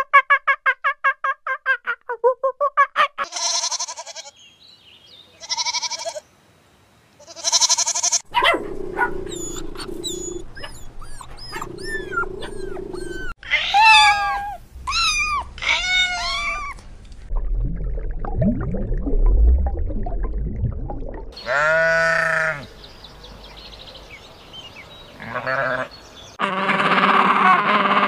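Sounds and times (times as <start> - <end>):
rough bleat-like calls: 3.2 - 4.4, 5.4 - 6.2, 7.2 - 8.3, 21.4 - 22.7, 25.2 - 28.0
loud arched animal calls: 7.4 - 14.1
short arched chirps: 8.3 - 13.4
steady low hum: 8.3 - 13.4.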